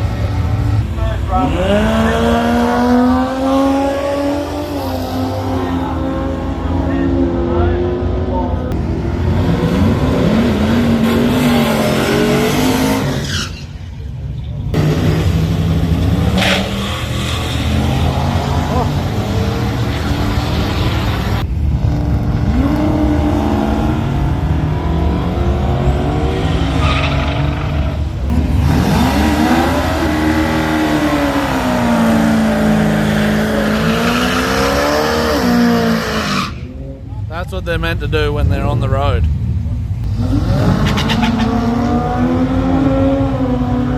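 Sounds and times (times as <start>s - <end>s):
racing car engines revving: 0.0s - 43.9s.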